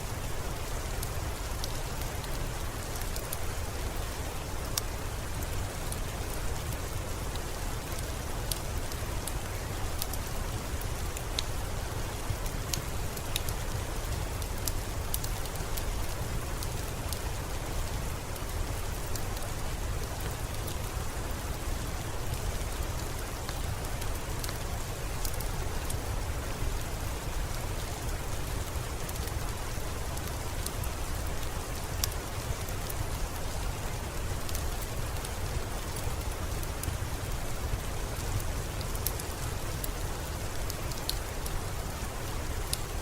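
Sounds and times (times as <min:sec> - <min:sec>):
crackling fireplace fire: 0:00.0 - 0:43.0
steady rain hiss: 0:00.0 - 0:43.0.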